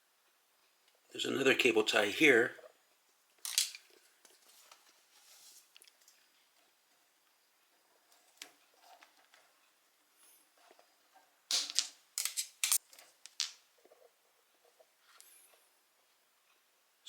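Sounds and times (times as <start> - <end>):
cable ties being snipped: 11.6 - 12.8.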